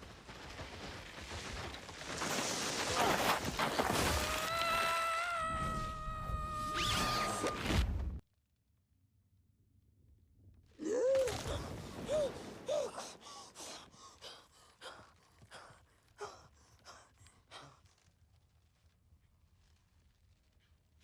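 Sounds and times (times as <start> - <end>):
short cries: 4.0 - 7.7
breathy gasps: 12.0 - 17.8.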